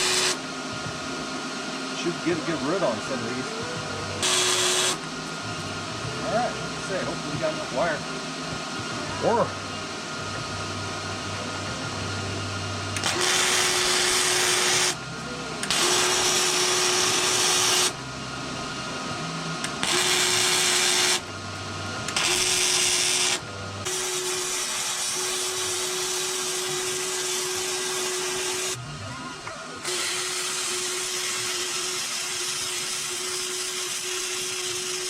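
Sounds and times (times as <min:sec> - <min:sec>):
welding arc crackling: 0:00.0 - 0:00.4, 0:04.2 - 0:05.0, 0:12.9 - 0:15.0, 0:15.6 - 0:18.0, 0:19.6 - 0:21.3, 0:22.1 - 0:28.8
low hum: 0:00.0 - 0:24.6.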